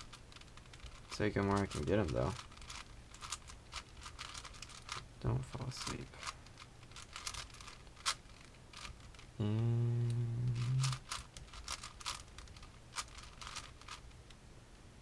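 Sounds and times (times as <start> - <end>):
puzzle cube plastic clicks: 0.0 - 9.3, 10.1 - 14.3
person speaking: 9.4 - 11.2.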